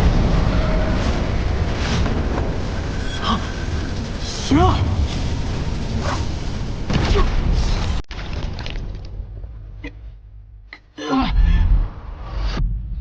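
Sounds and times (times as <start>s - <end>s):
loud rumbling blast: 0.0s - 8.0s.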